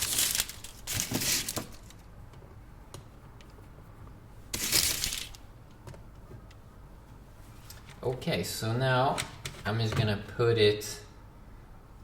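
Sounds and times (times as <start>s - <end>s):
wrapper crinkling: 0.0s - 2.1s, 4.6s - 5.4s.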